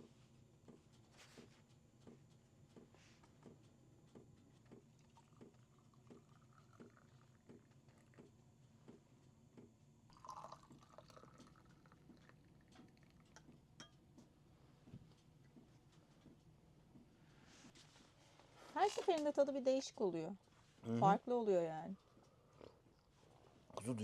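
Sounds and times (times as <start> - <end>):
tea pouring and dripping: 4.9 - 8.3, 10.1 - 14.0.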